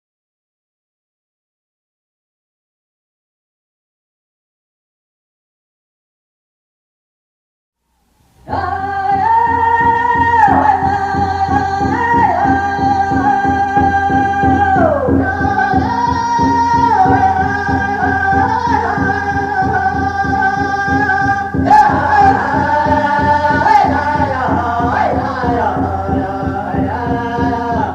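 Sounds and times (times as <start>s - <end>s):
music with steady beat: 8.0s - 27.9s
person singing long sliding notes: 8.4s - 27.9s.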